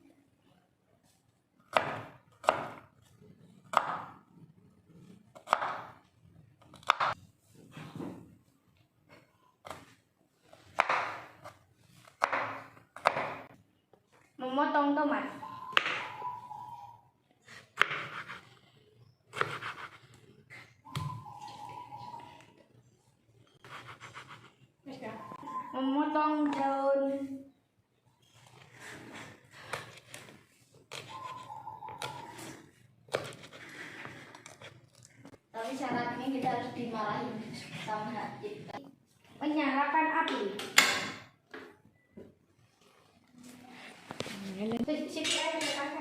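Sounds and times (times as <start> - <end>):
knife chopping on cutting board: 1.7 - 2.8, 10.7 - 11.4, 12.1 - 13.4, 19.3 - 20.0
knife cutting on cutting board: 17.5 - 18.5, 19.3 - 20.7, 23.6 - 24.5, 33.1 - 34.7.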